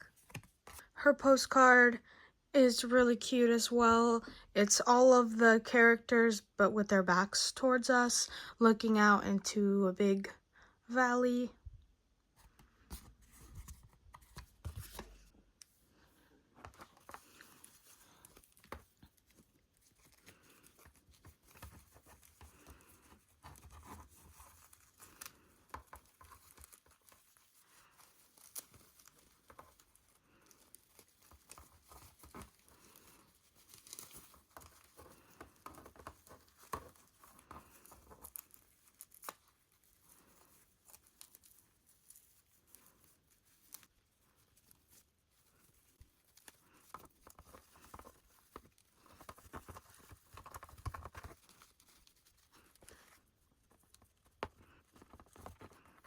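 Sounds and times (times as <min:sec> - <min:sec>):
packaging crinkling and tearing: 0:16.8 - 0:53.2.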